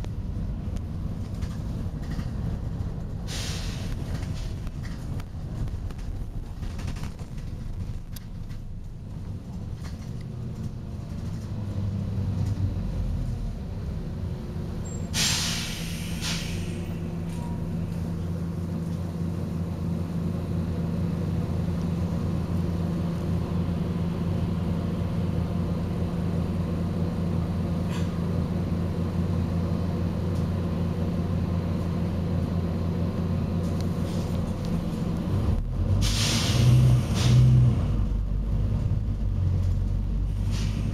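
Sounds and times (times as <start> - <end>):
bus diesel engine idling: 0.0 - 40.9
air brake hiss: 3.3 - 4.0, 14.9 - 17.4, 36.0 - 37.6, 40.3 - 40.9.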